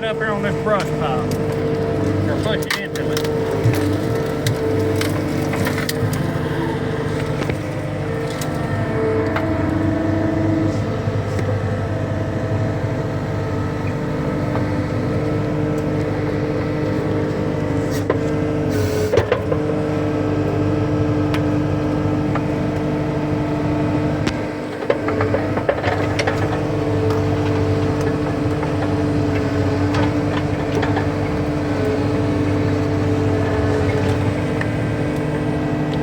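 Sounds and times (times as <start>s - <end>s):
diesel engine running under load: 0.0s - 36.0s
hydraulic whine: 0.0s - 36.0s
brush cracking and snapping: 0.8s - 6.5s.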